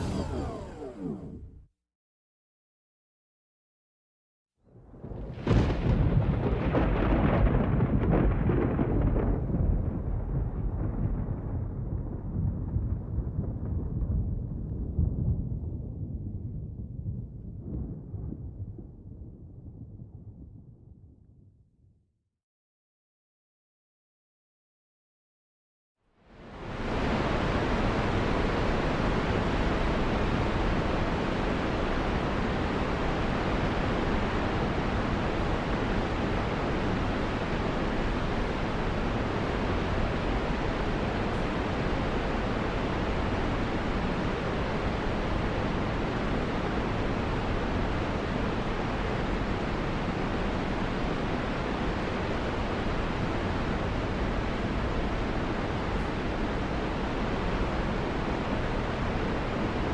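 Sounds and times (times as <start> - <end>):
car road noise: 0.0 - 1.7.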